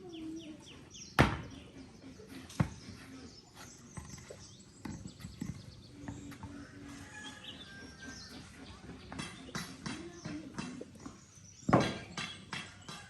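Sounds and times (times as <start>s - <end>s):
sharp knocks: 11.6s - 13.0s.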